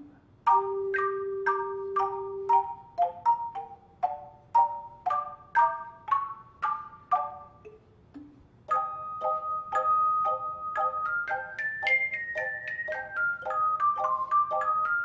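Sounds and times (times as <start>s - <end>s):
handbell choir playing chords: 8.7s - 15.0s.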